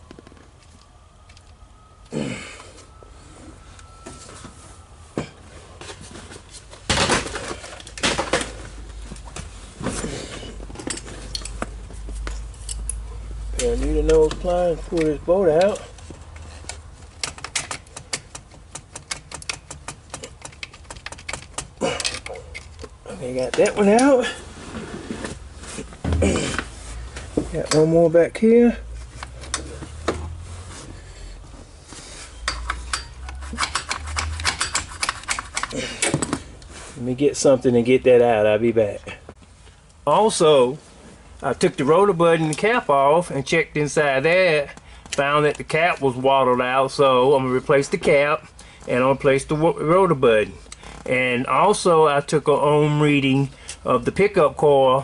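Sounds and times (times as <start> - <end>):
metal tools clinking on metal: 12.2 - 16.0, 32.3 - 36.4
metal hand tools clinking: 32.4 - 36.1.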